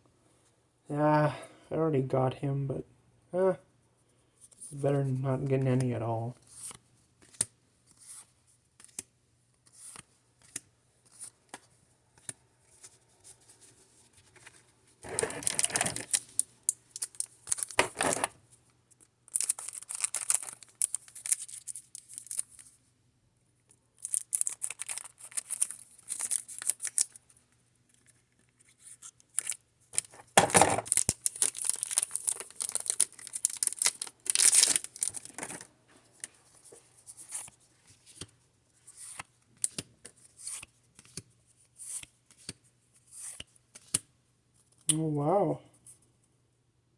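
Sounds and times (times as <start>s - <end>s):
wrapper tearing and crinkling: 15.0s - 16.4s, 17.0s - 18.3s, 19.3s - 22.6s, 24.0s - 27.2s, 29.3s - 35.7s.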